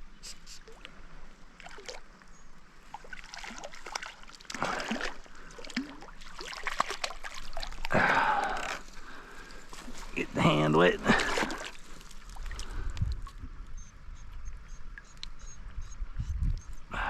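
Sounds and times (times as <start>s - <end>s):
fish thrashing water splashing: 3.0s - 8.9s, 11.0s - 12.8s.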